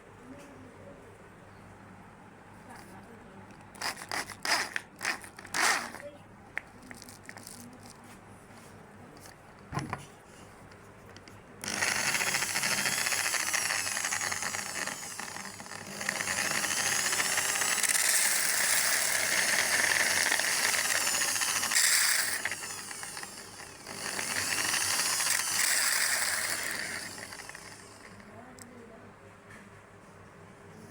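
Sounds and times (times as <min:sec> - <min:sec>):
drill grinder grinding and whining: 0:03.8 - 0:06.0, 0:11.6 - 0:28.4.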